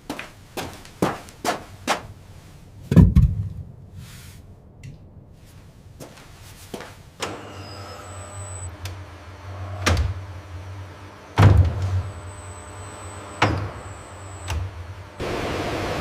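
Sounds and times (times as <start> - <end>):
low machine hum: 7.1 - 16.0
thin high whine: 7.2 - 16.0.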